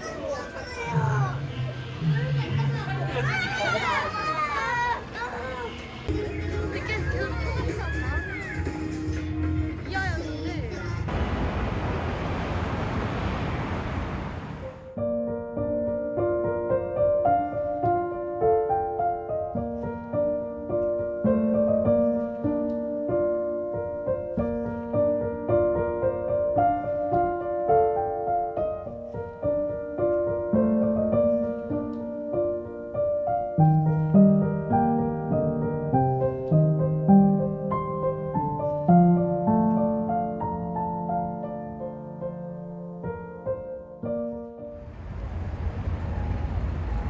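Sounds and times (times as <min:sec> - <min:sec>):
gentle piano piece: 0:14.5 - 0:47.0.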